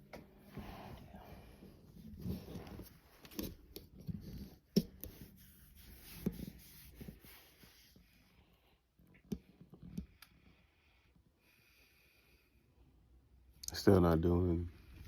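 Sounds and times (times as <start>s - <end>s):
soft rustling: 0.1s - 9.8s.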